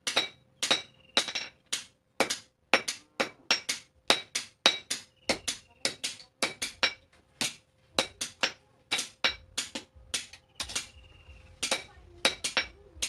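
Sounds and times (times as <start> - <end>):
hammer ringing on anvil: 0.0 - 11.0, 11.6 - 12.8.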